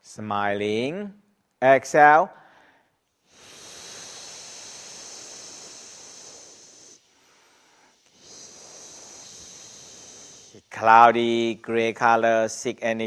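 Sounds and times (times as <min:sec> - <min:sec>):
whispered exhalation: 0:07.8 - 0:10.8.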